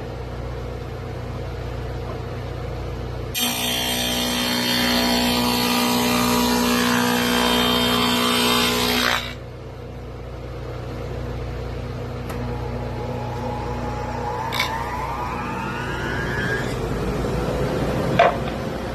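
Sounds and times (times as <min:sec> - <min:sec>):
low machine hum: 0:00.0 - 0:18.9
electric router cutting wood: 0:03.4 - 0:09.4, 0:12.3 - 0:18.8.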